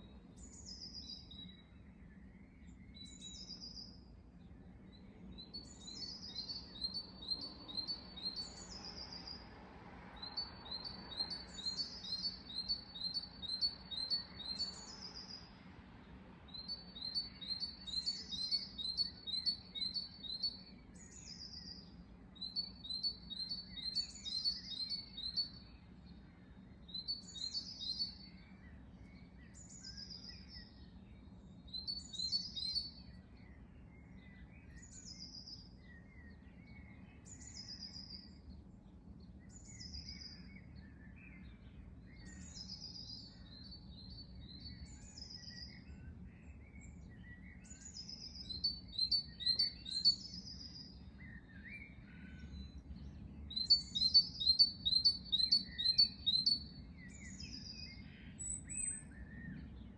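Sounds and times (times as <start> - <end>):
songbird singing: 0.0 - 59.9
birds twittering: 16.5 - 59.9.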